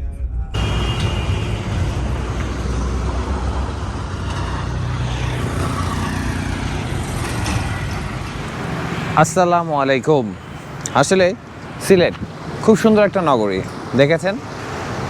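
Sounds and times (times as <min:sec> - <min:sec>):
low engine rumble: 0:00.0 - 0:09.5
traffic and road noise: 0:00.6 - 0:15.0.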